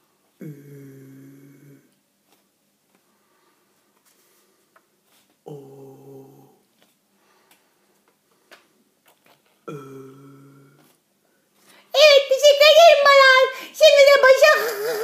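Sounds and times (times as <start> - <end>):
person holding a long vowel: 5.5 - 6.6, 9.7 - 10.9.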